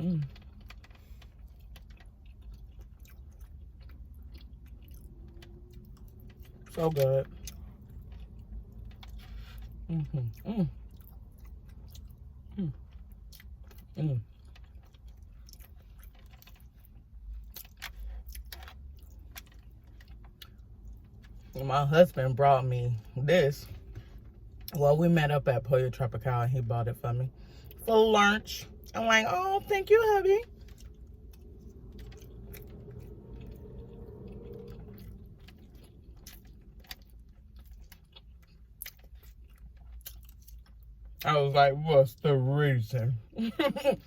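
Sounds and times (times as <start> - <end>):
chewing and wet mouth clicks: 0.0 - 21.6, 30.4 - 41.2
low hum: 29.6 - 39.6.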